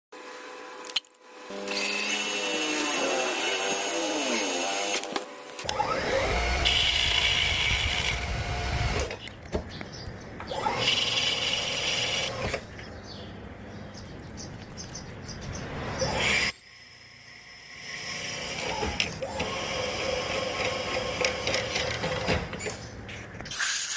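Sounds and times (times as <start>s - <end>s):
power tool motors running: 0.2s - 9.3s, 10.5s - 12.6s, 16.0s - 22.7s.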